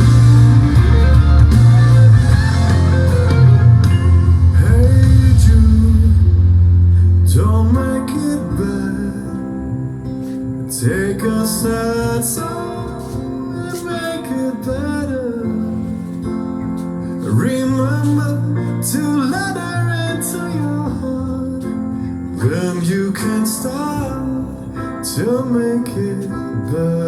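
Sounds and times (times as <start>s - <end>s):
steady bass: 0.0s - 13.9s
song with vocals and guitar: 0.0s - 27.0s.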